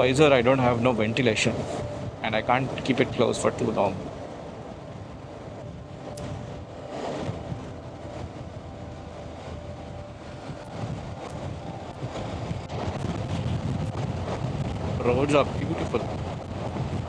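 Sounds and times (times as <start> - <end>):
wind buffeting a microphone: 0.0 - 17.0.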